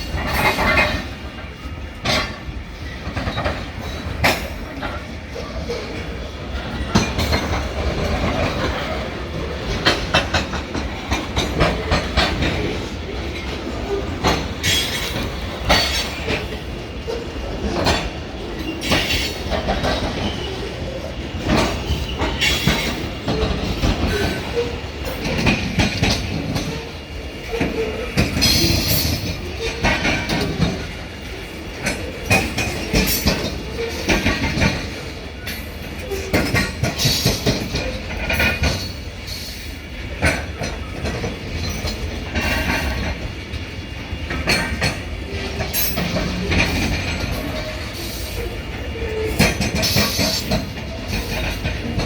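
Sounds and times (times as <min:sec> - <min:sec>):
low train rumble: 0:00.0 - 0:52.0
train wheels clacking over rail joints: 0:00.0 - 0:52.0
wheel squeals: 0:11.8 - 0:31.0.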